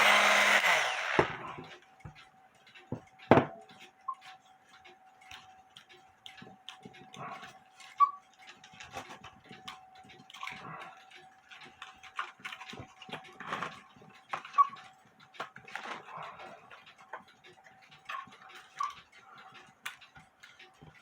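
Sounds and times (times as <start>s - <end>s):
small clicks and taps on wood: 1.2s - 21.0s.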